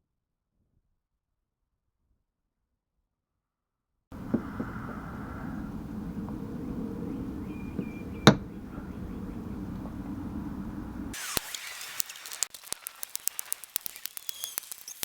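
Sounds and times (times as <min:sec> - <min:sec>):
irregular light clicks: 0:04.2 - 0:11.2.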